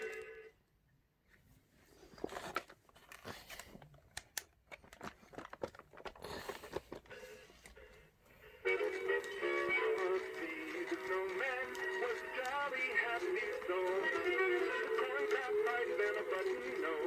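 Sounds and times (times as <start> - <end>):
crinkling rustle: 1.8 - 7.8.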